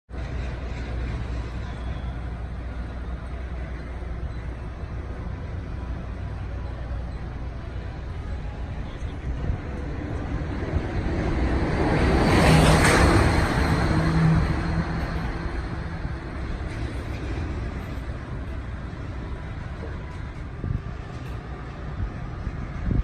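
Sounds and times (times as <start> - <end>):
outdoor background rumble: 0.1 - 23.0
vehicle passing by: 9.4 - 18.4.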